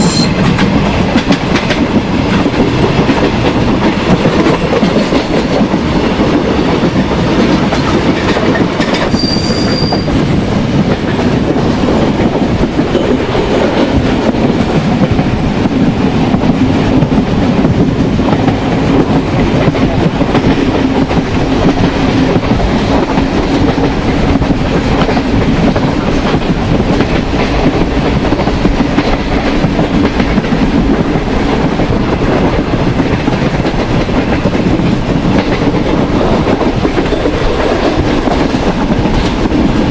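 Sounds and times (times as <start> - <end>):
high squeal: 0.0 - 0.3, 9.1 - 10.2
train wheels rumbling on rails: 0.0 - 39.9.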